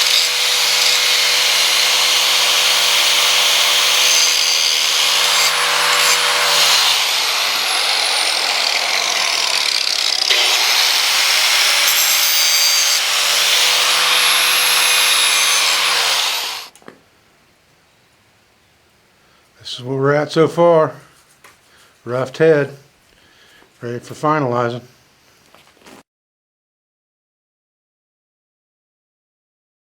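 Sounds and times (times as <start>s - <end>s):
electric grinder grinding steel: 0.0s - 16.7s.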